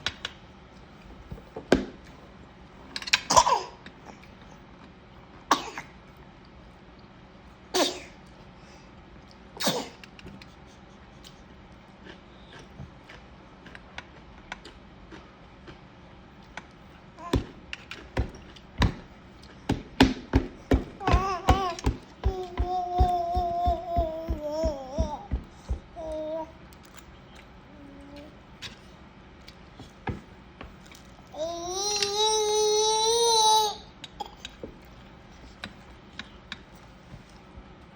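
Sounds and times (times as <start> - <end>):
person sneezing: 9.6 - 10.0
sharp knocks and taps: 19.7 - 26.2.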